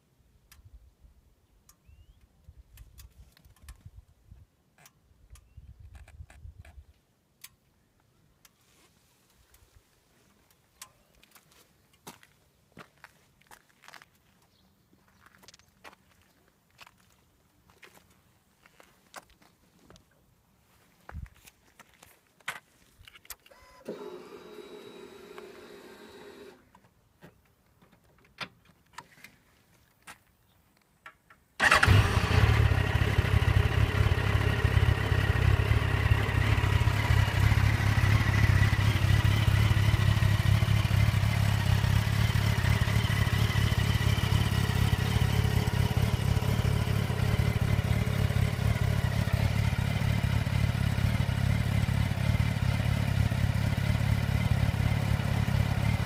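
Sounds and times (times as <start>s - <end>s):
motorcycle engine starting and idling: 23.5s - 26.9s, 31.6s - 56.0s.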